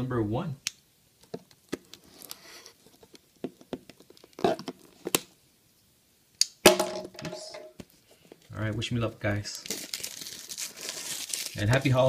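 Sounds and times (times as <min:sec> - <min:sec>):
plastic wrap rustling: 0:07.9 - 0:12.0.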